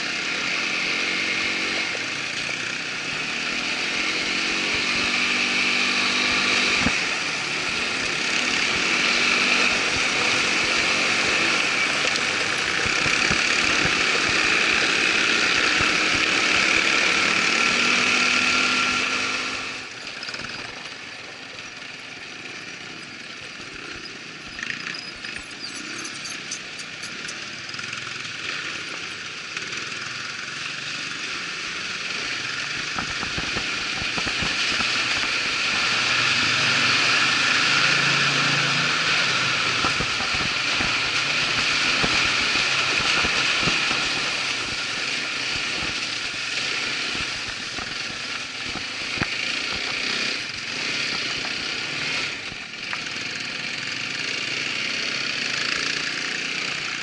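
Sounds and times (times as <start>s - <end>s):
quad bike engine running: 0.0s - 57.0s
scattered clicks: 23.6s - 27.6s.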